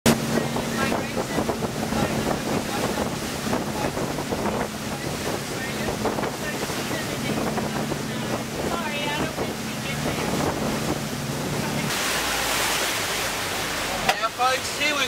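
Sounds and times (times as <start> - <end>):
wind buffeting microphone: 0.0 - 12.4
boat engine humming: 0.0 - 15.0
sea water rushing and splashing: 0.0 - 15.0.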